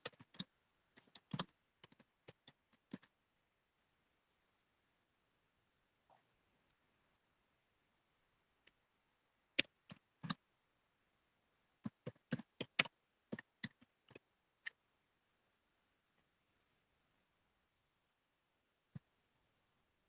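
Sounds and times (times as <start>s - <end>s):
keyboard keys clicking: 0.0s - 3.1s, 11.9s - 14.2s.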